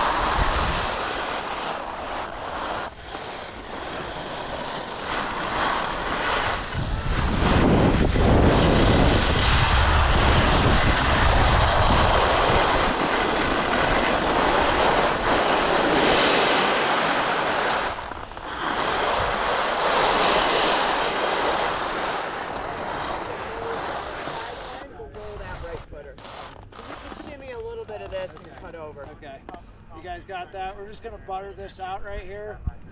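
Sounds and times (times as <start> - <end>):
wind buffeting microphone: 0.0 - 26.1
skis scraping on snow: 0.0 - 28.9.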